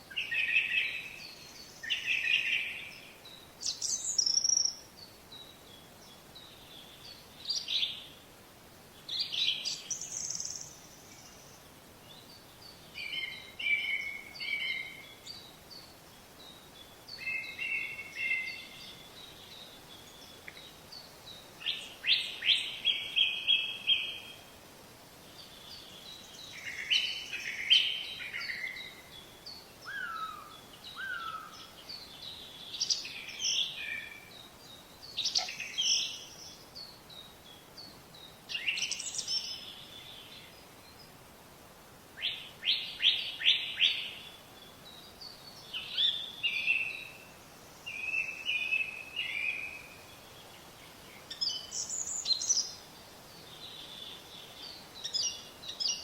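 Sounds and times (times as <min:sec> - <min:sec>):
birds chirping and singing: 0:25.4 - 0:41.0.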